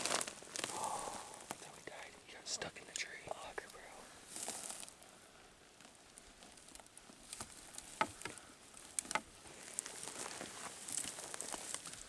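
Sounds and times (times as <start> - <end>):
twigs snapping in dry brush: 0.0 - 1.7, 5.8 - 12.0.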